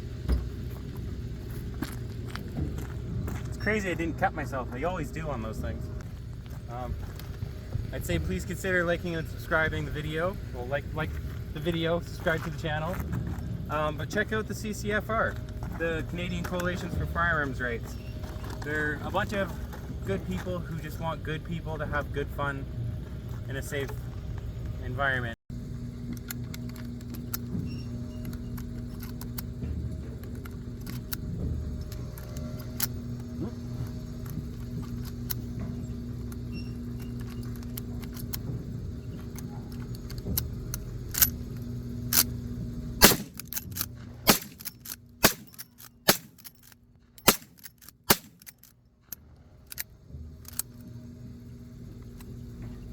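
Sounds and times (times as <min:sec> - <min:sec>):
steady low hum: 0:00.0 - 0:52.9
sharp cracks: 0:43.0 - 0:48.8.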